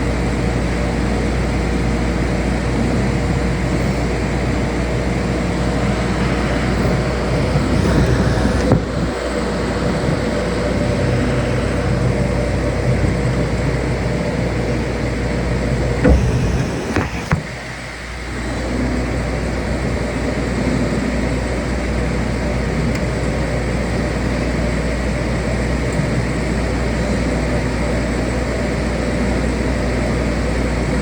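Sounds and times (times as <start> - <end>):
machine humming: 5.1 - 9.4, 16.0 - 17.7
short knocks: 16.0 - 17.6.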